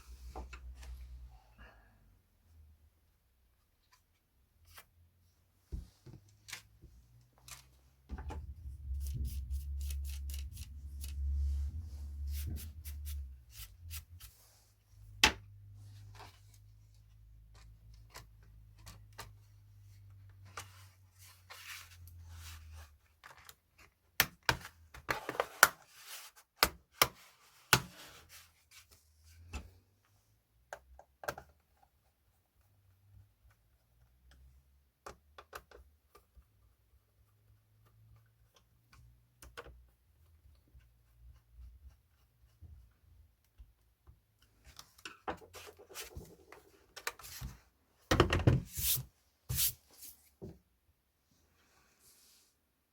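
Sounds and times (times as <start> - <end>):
low rumble: 8.2 - 13.1.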